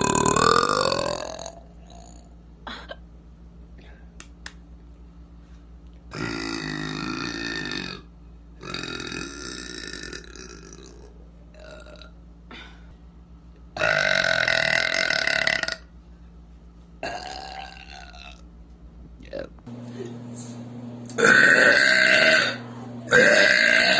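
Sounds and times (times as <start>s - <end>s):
woman burping: 0.0s - 3.0s, 17.0s - 18.4s, 21.2s - 23.9s.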